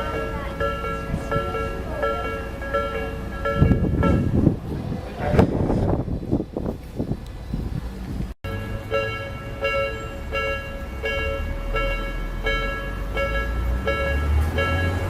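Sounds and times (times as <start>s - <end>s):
level crossing warning bell ringing: 0.0s - 4.6s, 8.4s - 15.0s.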